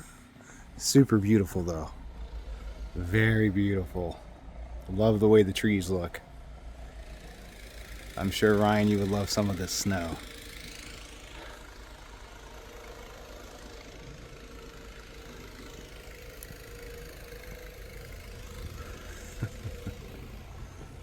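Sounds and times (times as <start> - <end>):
engine running at low speed: 0.0 - 21.0
faint steady whine: 0.0 - 21.0.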